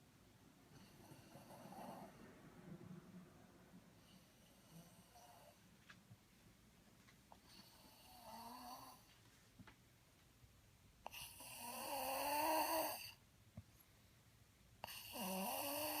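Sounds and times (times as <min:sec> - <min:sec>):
person snoring: 0:07.6 - 0:09.1, 0:11.1 - 0:13.2, 0:14.8 - 0:16.0.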